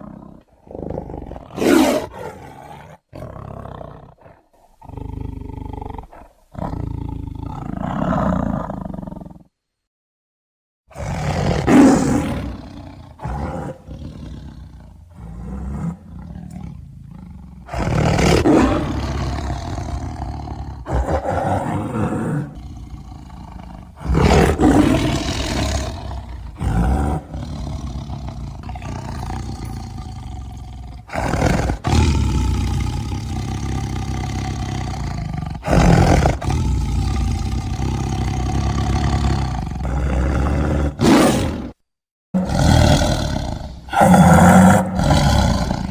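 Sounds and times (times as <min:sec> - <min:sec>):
deep monster roars: 0:10.9 - 0:41.8, 0:42.4 - 0:45.9.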